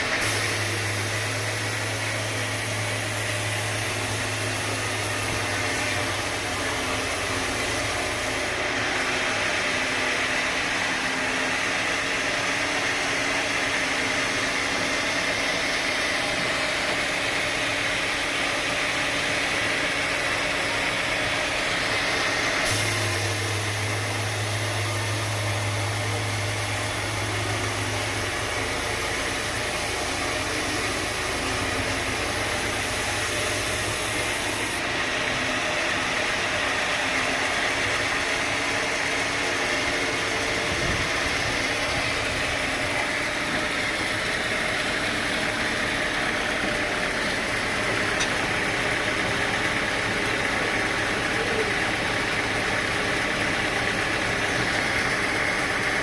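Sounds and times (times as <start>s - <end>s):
sawmill machinery droning: 0.0s - 56.0s
high hiss: 22.6s - 34.8s.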